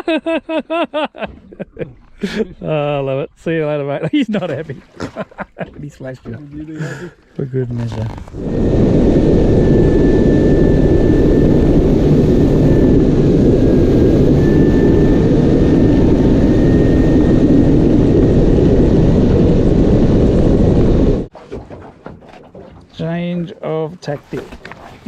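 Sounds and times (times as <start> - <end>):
constant rushing noise: 7.7 - 21.3.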